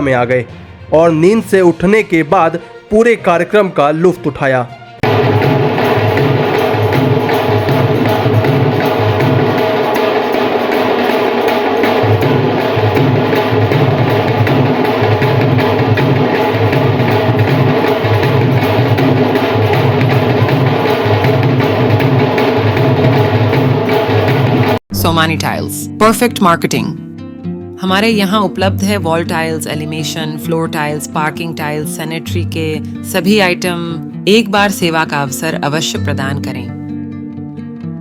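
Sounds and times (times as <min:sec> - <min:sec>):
folk drumming: 0:05.0 - 0:25.2.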